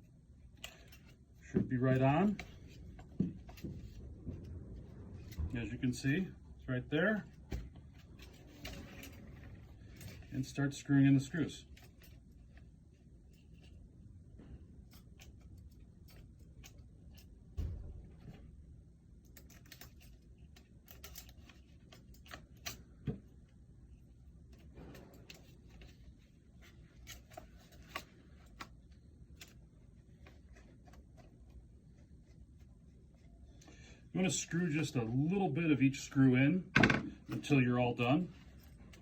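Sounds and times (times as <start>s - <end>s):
low thump: 17.6s - 18.6s.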